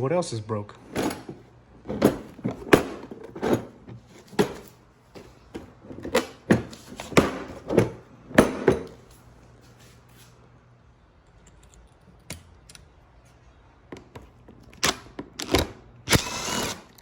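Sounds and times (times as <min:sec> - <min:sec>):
tools knocking and clunking: 0:00.8 - 0:09.1.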